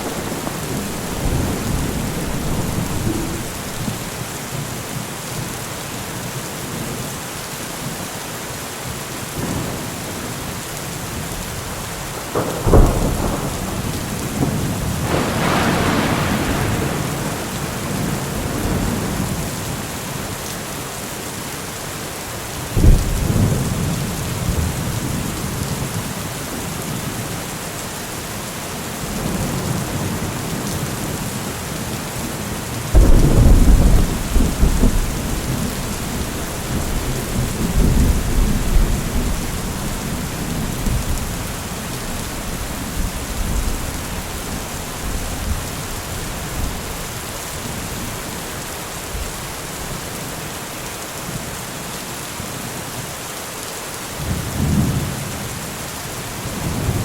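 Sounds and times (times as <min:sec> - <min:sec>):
thunder cracking and rumbling: 0:00.0 - 0:04.2, 0:11.6 - 0:19.9, 0:32.9 - 0:48.2
steady rain falling: 0:00.0 - 0:57.0.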